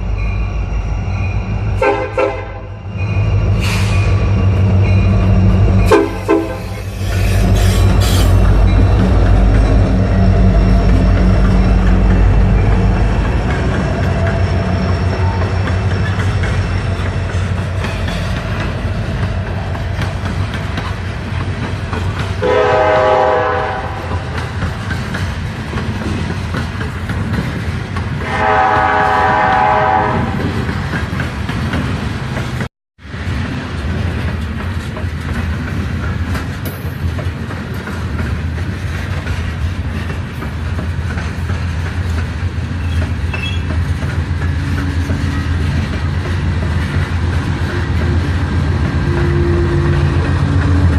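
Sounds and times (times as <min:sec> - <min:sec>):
freight train rumbling: 0:00.0 - 0:50.9
locomotive air horn: 0:01.8 - 0:02.7, 0:05.9 - 0:08.4, 0:22.4 - 0:24.2, 0:28.2 - 0:30.4.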